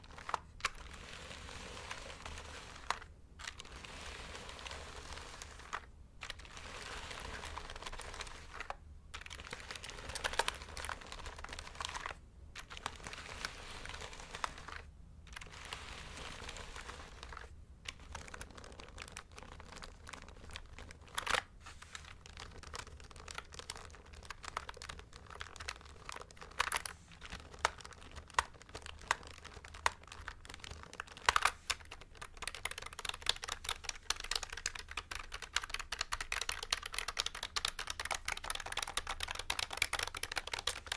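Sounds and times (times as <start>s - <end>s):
scratchy rustling: 0.0s - 33.0s
mechanical keyboard typing: 3.5s - 14.8s, 22.2s - 40.9s.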